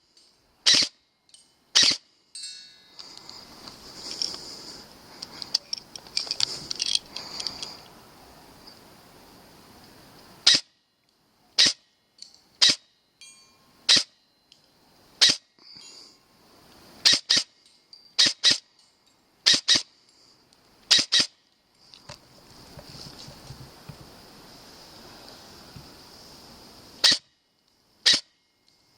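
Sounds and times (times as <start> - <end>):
rustling handling noise: 3.0 - 8.0, 21.8 - 24.3.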